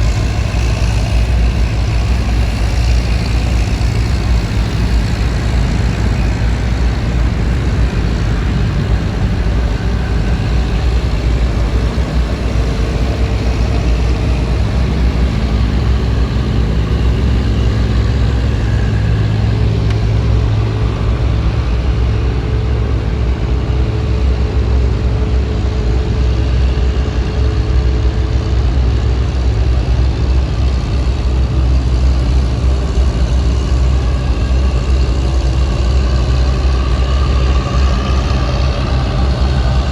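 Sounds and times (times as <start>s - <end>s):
diesel boat engine humming: 0.0s - 39.9s.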